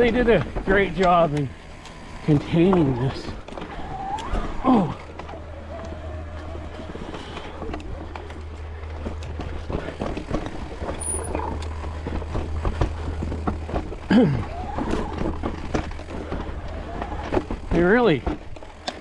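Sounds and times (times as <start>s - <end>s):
bike rattling over bumps: 0.0s - 19.0s
tyres rolling on dirt: 0.0s - 19.0s
person exclaiming: 14.1s - 15.2s.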